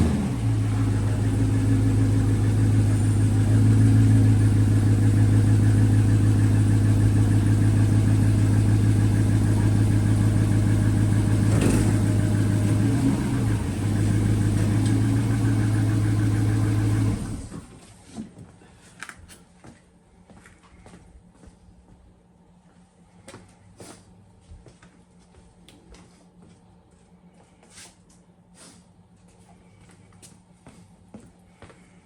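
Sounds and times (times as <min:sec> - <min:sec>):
car engine idling: 0:00.0 - 0:17.5.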